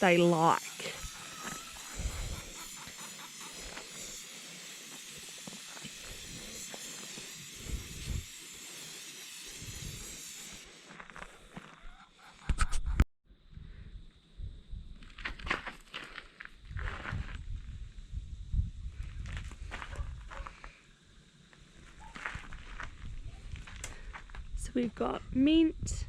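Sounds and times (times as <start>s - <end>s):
spray-paint can hissing: 0.0s - 10.7s.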